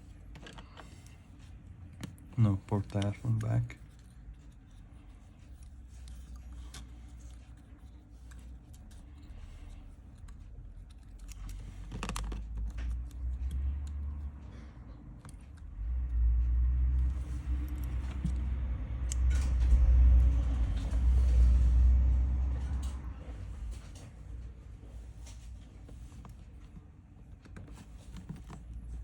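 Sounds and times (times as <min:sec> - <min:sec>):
low rumble: 0:15.6 - 0:24.8.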